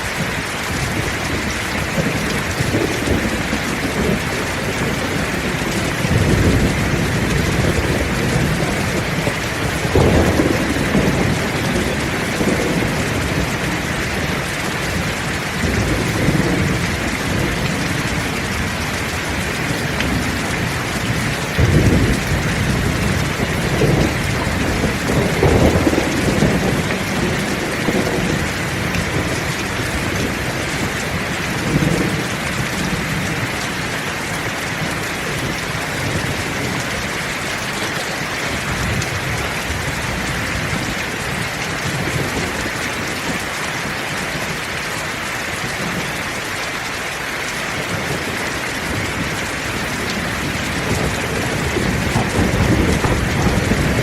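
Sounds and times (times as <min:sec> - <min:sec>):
heavy steady rain: 0:00.0 - 0:54.0
rolling thunder: 0:00.6 - 0:33.6, 0:47.8 - 0:54.0.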